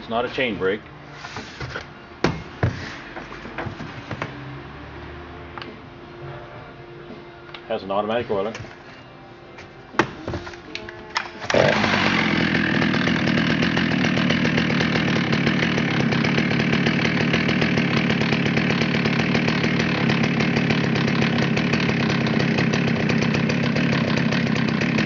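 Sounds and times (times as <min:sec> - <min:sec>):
chainsaw starting and running: 0:10.0 - 0:25.0.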